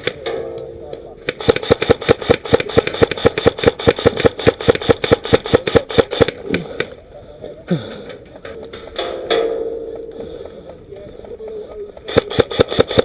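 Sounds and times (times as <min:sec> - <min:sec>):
airsoft rifle shots: 0:00.0 - 0:06.9, 0:12.0 - 0:13.0.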